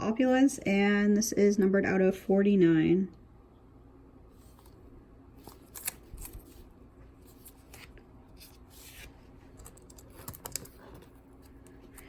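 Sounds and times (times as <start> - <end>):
trading cards rustling: 5.4 - 12.0.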